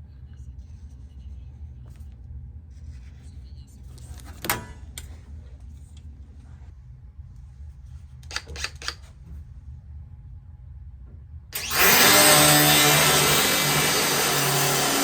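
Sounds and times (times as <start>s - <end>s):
power tool running: 11.6s - 15.0s.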